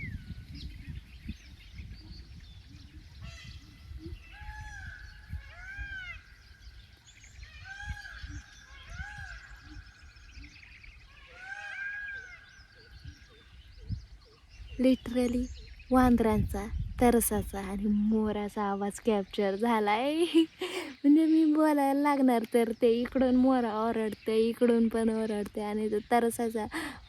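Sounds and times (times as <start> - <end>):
small birds chirping: 0.0 - 27.0
distant wild animal calls: 1.8 - 14.5.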